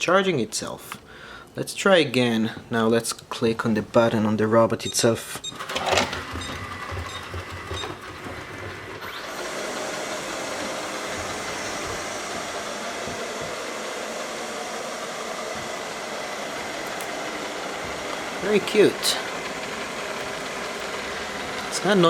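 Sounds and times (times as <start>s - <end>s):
robot vacuum motor whine: 5.6s - 22.0s
short electronic beeps: 6.3s - 8.0s.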